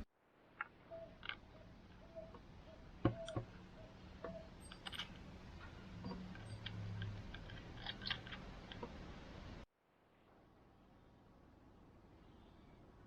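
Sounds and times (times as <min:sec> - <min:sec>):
hand tools clicking and tapping: 0:00.6 - 0:09.0.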